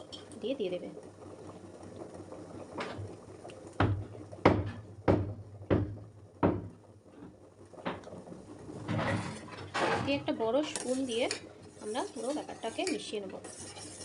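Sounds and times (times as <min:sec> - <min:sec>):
pods being pounded: 0:03.8 - 0:06.7.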